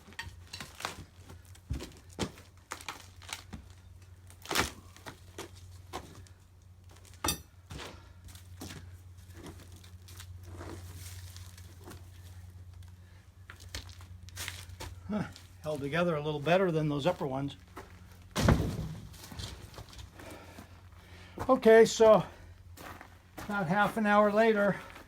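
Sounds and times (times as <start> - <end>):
steady low hum: 0.0 - 25.0
wood cracking and tearing: 0.6 - 5.7
wood knocking and thudding: 18.3 - 19.6.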